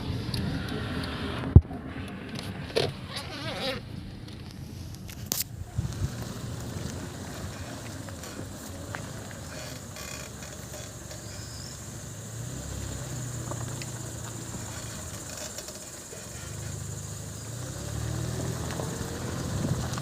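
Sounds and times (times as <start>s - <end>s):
car engine and road rumble: 0.0s - 20.0s
faint high-pitched brake squeak: 11.2s - 11.8s.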